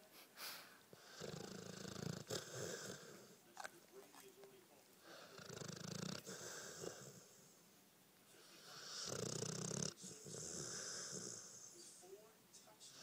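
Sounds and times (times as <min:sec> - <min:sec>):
dog breathing quietly: 0:00.1 - 0:03.5, 0:05.0 - 0:07.6, 0:08.3 - 0:11.9
dog snoring: 0:00.9 - 0:03.7, 0:05.0 - 0:07.6, 0:08.4 - 0:12.0.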